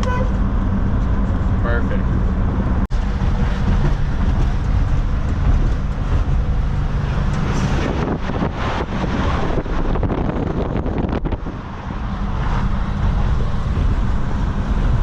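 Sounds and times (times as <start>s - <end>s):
engine running steadily: 0.0s - 15.0s
road and wind noise: 0.0s - 15.0s
knocks and rattles: 3.2s - 6.6s.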